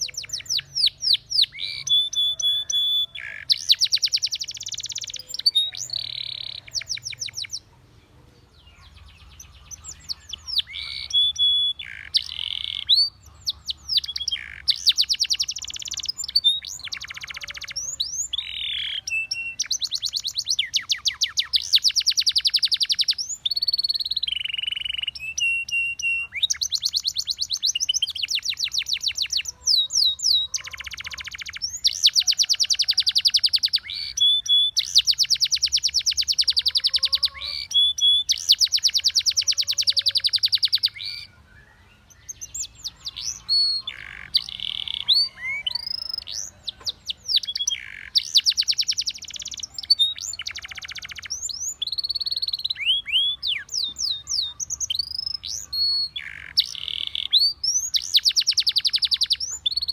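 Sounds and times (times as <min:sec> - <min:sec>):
canary singing trills: 0:00.0 - 0:59.9.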